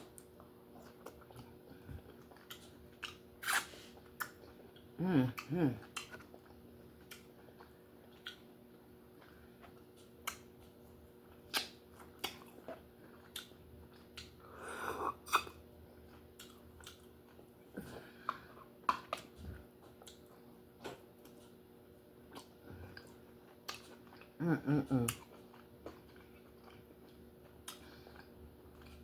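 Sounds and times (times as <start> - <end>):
mouth eating sounds: 0.1 - 8.5, 22.3 - 29.0.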